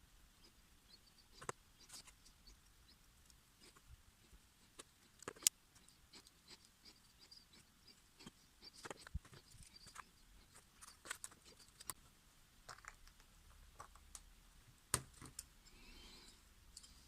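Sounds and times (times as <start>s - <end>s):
small hard objects clicking: 12.7s - 14.3s.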